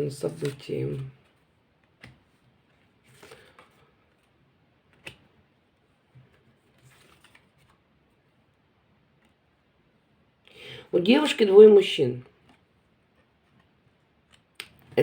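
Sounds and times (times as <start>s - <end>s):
playing cards being handled: 0.1s - 5.4s, 6.0s - 8.2s.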